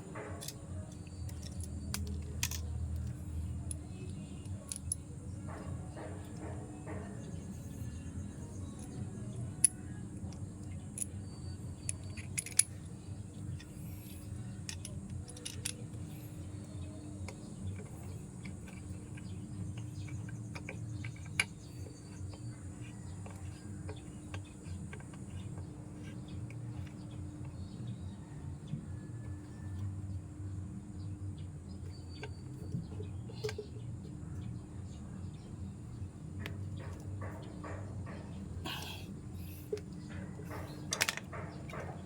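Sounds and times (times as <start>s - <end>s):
metal tools clinking: 0.0s - 8.0s, 11.0s - 12.9s, 13.5s - 16.2s, 38.7s - 42.0s
steady low hum: 0.0s - 42.0s.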